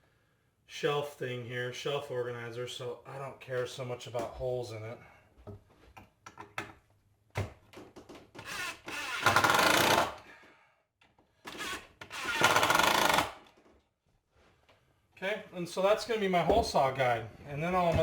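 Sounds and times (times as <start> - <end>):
power drill driving screws: 8.4 - 10.2, 11.5 - 13.6.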